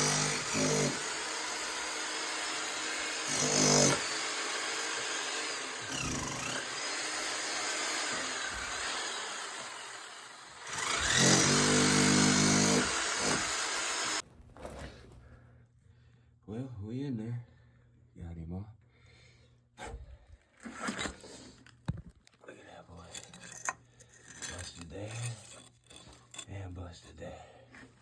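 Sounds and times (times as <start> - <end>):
power tool motor whine: 0.0 - 14.2.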